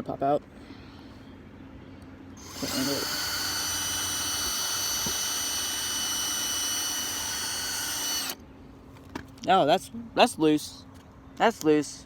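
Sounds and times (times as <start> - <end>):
electric drill whining: 2.4 - 8.4.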